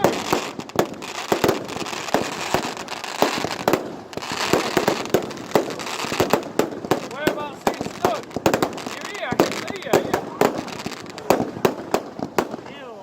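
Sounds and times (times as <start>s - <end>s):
continuous hiss: 0.0s - 13.0s
fireworks bangs and pops: 0.0s - 13.0s.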